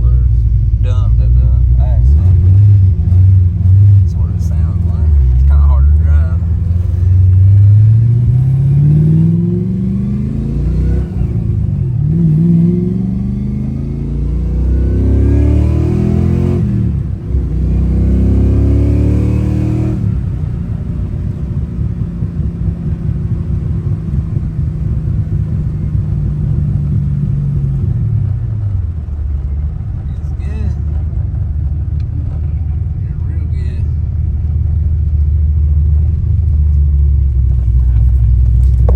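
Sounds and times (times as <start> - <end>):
car engine revving and idling: 0.0 - 38.9.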